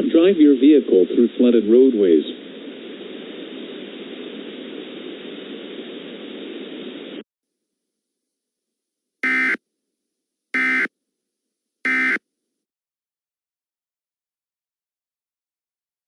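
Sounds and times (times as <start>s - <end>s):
static hiss: 0.0s - 7.2s.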